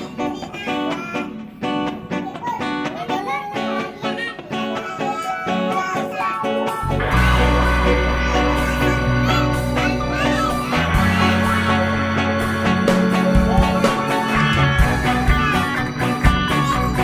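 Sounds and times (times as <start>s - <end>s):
accompaniment with deep bass: 6.8s - 17.0s.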